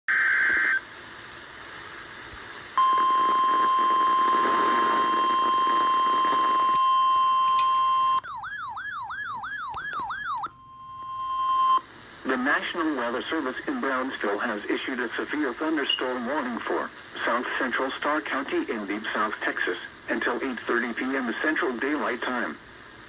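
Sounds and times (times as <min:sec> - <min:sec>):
radio hiss: 0:00.1 - 0:06.7, 0:11.6 - 0:23.0
steady warning alarm tone: 0:02.8 - 0:14.4, 0:15.4 - 0:16.5
data tone burst: 0:15.8 - 0:16.4.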